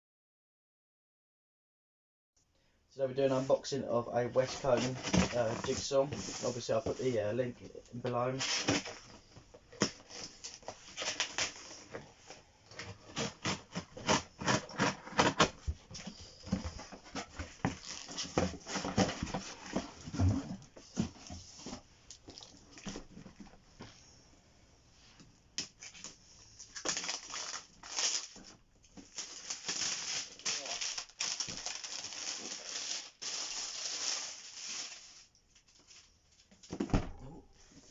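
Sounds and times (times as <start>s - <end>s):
cardboard packaging crinkling: 9.8s - 11.9s, 25.8s - 36.4s.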